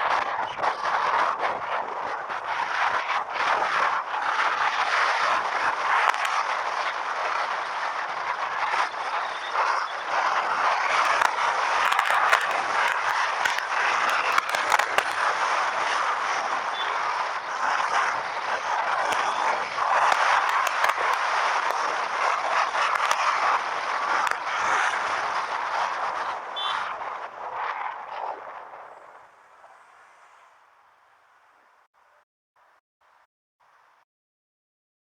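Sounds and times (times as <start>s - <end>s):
rushing wind: 0.0s - 31.8s
bike road noise: 0.0s - 33.2s
sharp clicks and rattles: 6.0s - 6.4s, 11.0s - 15.2s, 19.1s - 25.6s.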